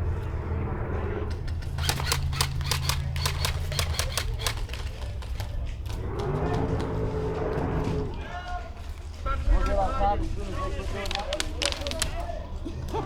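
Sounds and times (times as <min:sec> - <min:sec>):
steady low hum: 0:00.0 - 0:08.3
airsoft guns firing: 0:01.4 - 0:05.6.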